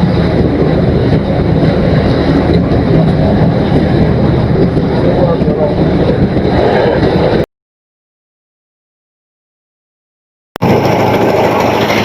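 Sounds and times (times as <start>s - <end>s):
boat engine running: 0.0s - 7.5s, 10.6s - 12.0s.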